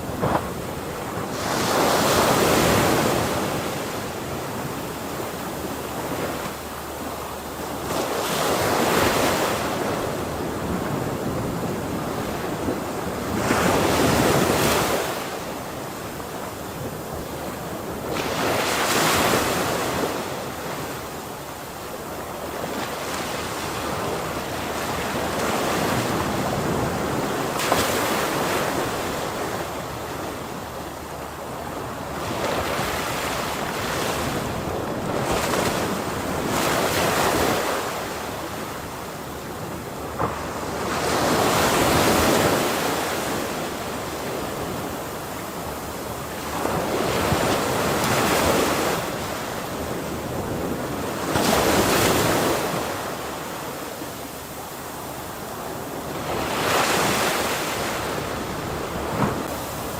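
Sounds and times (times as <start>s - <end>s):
wind: 0.0s - 59.9s
ocean waves breaking: 21.8s - 59.9s.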